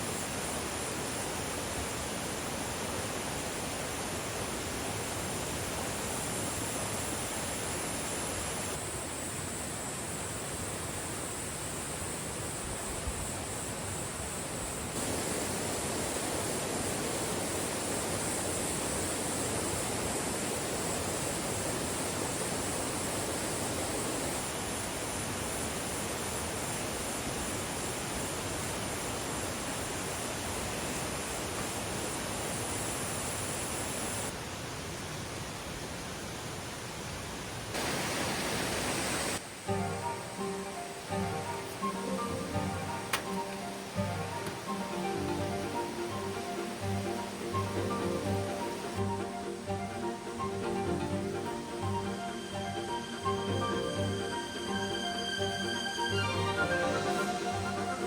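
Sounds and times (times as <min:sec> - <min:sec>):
stream rushing over rocks: 0:00.0 - 0:08.8, 0:15.0 - 0:55.2
insects chorus: 0:00.0 - 0:34.3.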